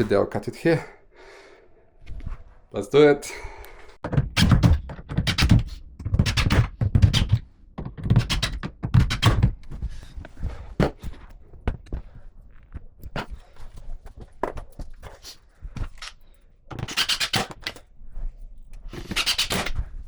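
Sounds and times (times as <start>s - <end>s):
irregular knocks and thuds: 4.0s - 13.4s.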